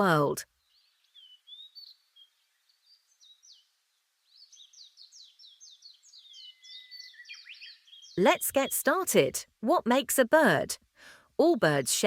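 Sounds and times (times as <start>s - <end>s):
small songbirds chirping: 0.4s - 9.0s.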